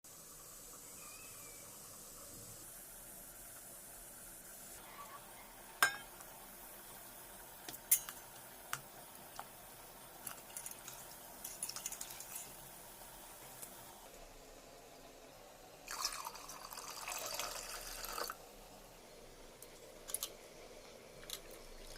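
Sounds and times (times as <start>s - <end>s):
kitchen utensils clinking: 5.8s - 6.2s, 7.9s - 8.3s.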